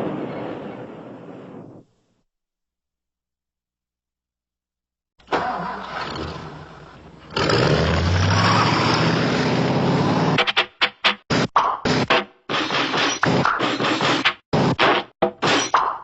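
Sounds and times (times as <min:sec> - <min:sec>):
car engine starting and running: 0:05.2 - 0:10.4.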